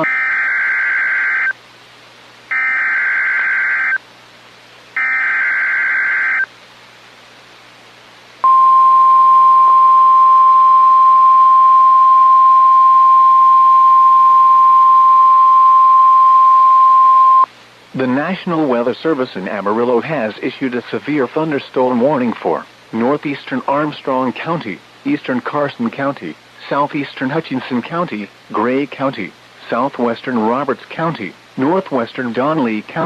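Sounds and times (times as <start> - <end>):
steady high warning tone: 0.0 - 1.6, 2.5 - 4.0, 5.0 - 6.5, 8.4 - 17.5.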